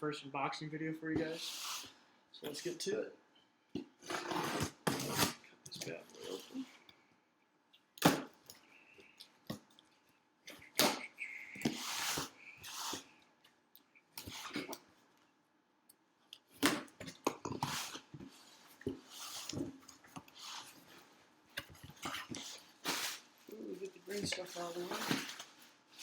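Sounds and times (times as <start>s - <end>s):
cardboard box cut open: 4.0s - 5.4s
cardboard tearing and rustling: 4.0s - 5.4s, 23.9s - 26.0s.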